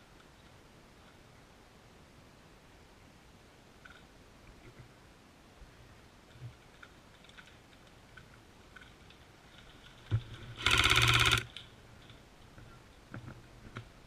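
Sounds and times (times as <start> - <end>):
full-auto airsoft burst: 10.6 - 11.5.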